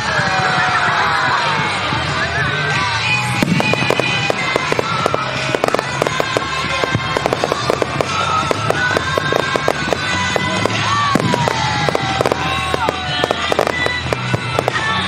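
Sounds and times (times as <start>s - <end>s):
pop music with singing: 0.0s - 15.0s
fireworks popping and crackling: 3.0s - 15.0s.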